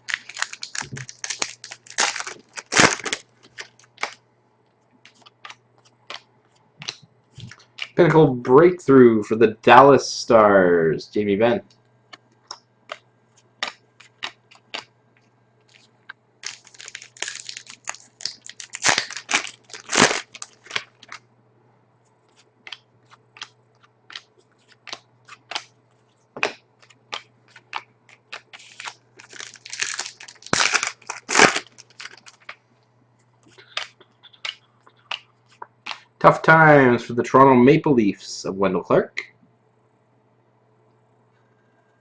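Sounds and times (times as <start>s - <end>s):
cards rustling: 0.0s - 4.2s, 15.7s - 21.2s, 22.3s - 25.7s, 26.4s - 32.6s
trading cards clicking: 22.6s - 25.7s, 26.4s - 32.6s.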